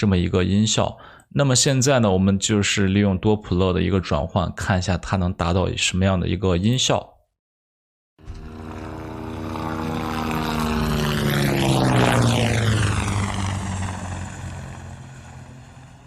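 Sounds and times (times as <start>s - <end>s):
helicopter flying over: 8.2s - 16.0s.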